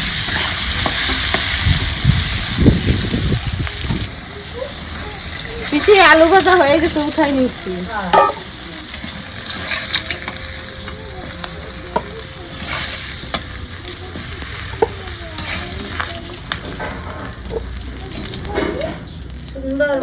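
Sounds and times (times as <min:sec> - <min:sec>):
potatoes sizzling in hot oil: 0:00.0 - 0:20.0
utensil scraping a pan: 0:04.7 - 0:19.1.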